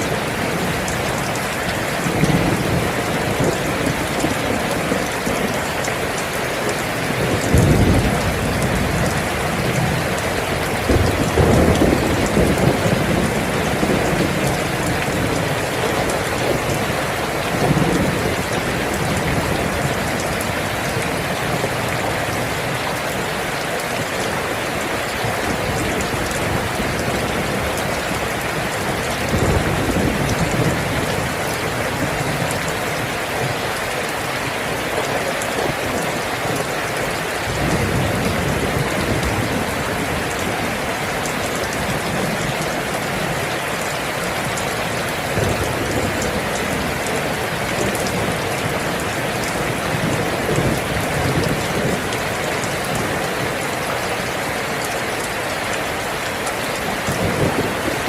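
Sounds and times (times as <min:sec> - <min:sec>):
thunder rumbling: 0:00.0 - 0:23.3, 0:25.2 - 0:33.6, 0:37.4 - 0:53.6, 0:56.7 - 0:58.0
steady rain: 0:00.0 - 0:58.0.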